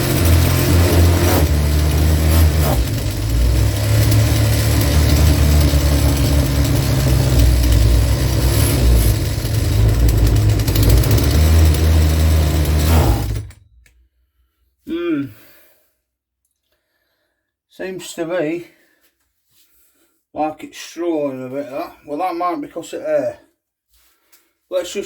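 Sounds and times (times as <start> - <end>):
petrol strimmer engine running: 0.0 - 13.6.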